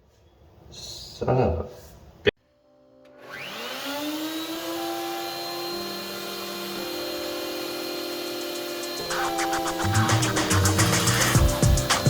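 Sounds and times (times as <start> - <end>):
electric motor whining: 3.2 - 12.0.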